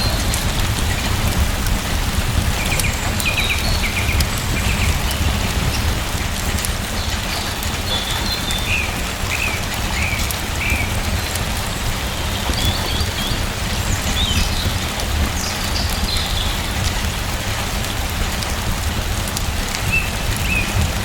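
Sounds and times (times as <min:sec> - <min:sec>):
rain falling: 0:00.0 - 0:21.0
bird chirping: 0:02.6 - 0:06.0, 0:06.9 - 0:16.8, 0:19.8 - 0:21.0.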